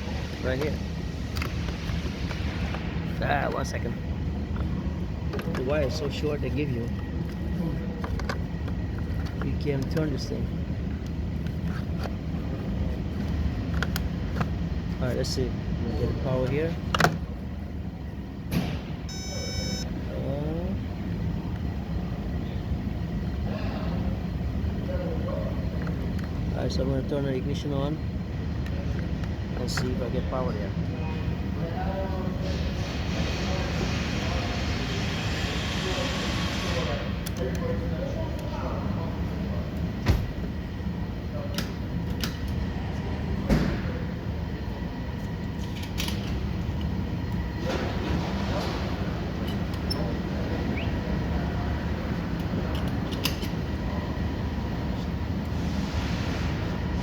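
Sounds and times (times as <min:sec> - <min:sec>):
steady low rumble: 0:00.0 - 0:24.9
tools clicking and knocking: 0:08.0 - 0:10.1
short high electronic beep: 0:19.1 - 0:19.8.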